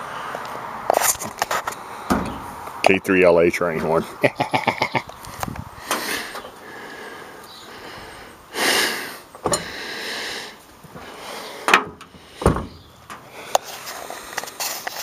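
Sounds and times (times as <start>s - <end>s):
scraping or sliding: 0.9s - 2.7s
low thump: 2.1s - 2.6s.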